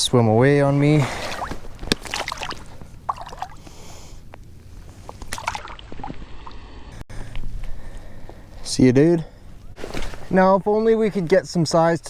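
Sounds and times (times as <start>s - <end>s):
splashing in shallow water: 0.8s - 4.2s, 4.8s - 6.8s, 9.6s - 10.4s.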